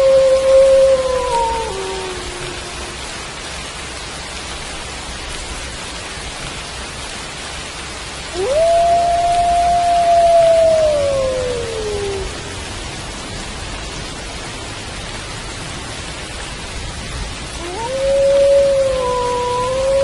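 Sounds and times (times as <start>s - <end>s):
wolf howling: 0.0s - 3.1s, 8.3s - 12.5s, 17.6s - 20.0s
steady rain falling: 0.0s - 20.0s.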